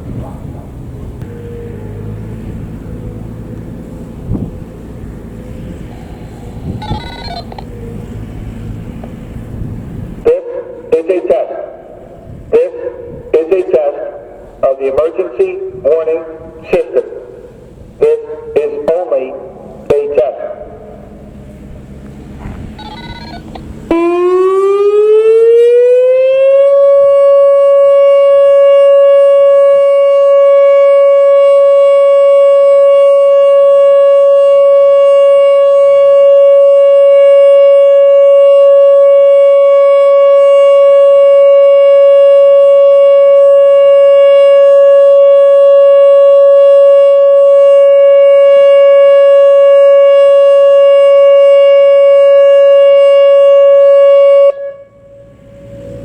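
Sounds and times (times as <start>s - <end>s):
electronic storm siren tone: 4.4s - 9.0s, 22.8s - 56.0s.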